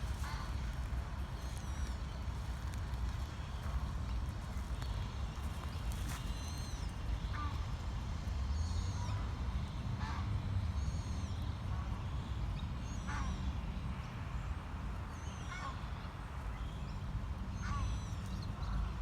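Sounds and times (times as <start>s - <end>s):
moorhens calling: 0.0s - 7.5s.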